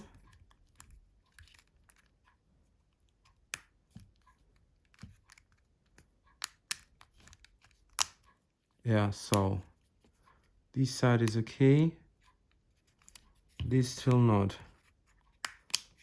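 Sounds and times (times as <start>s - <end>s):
plastic parts clicking: 0.0s - 2.4s, 3.0s - 8.4s, 15.1s - 16.0s
sharp plastic click: 4.9s - 8.3s, 15.4s - 16.0s.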